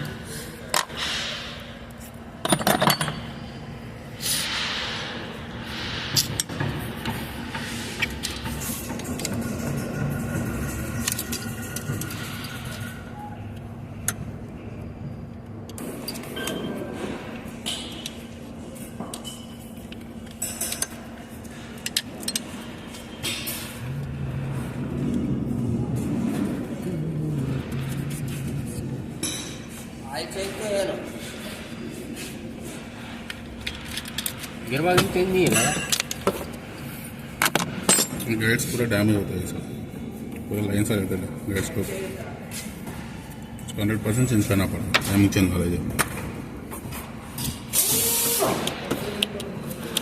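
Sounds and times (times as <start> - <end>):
steady low hum: 0.0 - 50.0
metal tools clinking: 2.4 - 3.5
low drone: 3.4 - 15.7, 23.0 - 30.0.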